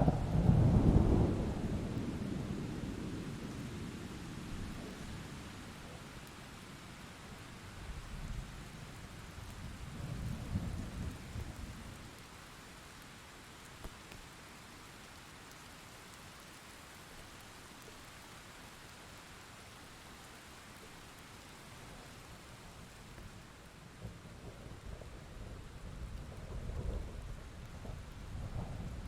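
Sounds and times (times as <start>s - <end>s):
thunder rumbling: 0.0s - 3.7s, 24.0s - 29.0s
steady rain falling: 0.0s - 29.0s.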